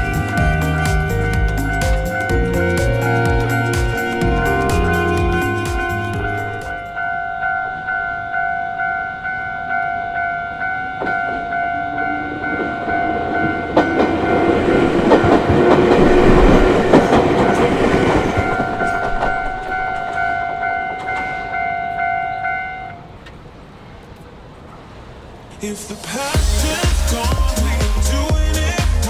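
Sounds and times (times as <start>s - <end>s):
level crossing warning bell: 0.0s - 23.1s
train wheels clattering over rails: 12.5s - 21.7s.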